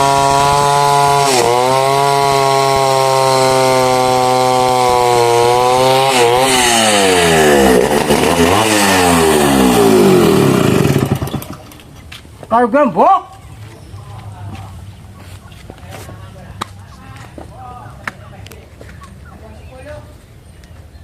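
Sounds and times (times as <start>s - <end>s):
chainsaw cutting wood: 0.0s - 12.1s.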